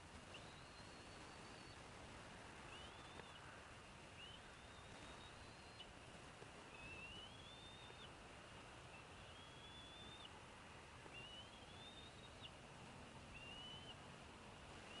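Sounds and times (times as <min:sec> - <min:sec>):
high-pitched whistling bird calls: 0:00.3 - 0:01.8, 0:02.7 - 0:03.4, 0:04.2 - 0:05.9, 0:06.7 - 0:08.1, 0:08.9 - 0:10.3, 0:11.1 - 0:12.6, 0:13.3 - 0:14.0.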